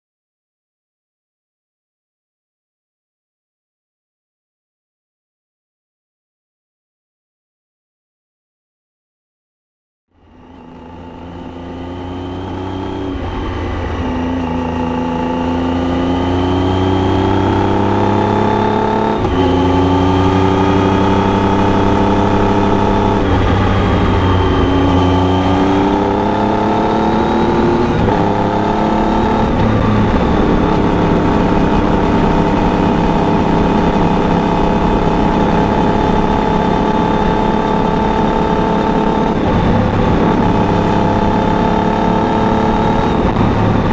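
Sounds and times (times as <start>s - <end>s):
motorcycle engine revving through gears: 10.2s - 43.9s.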